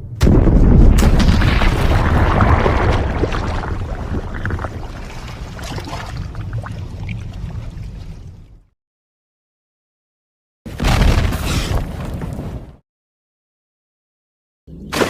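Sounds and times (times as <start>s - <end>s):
huge explosion blast: 0.1s - 5.0s
debris crackling: 0.2s - 5.6s.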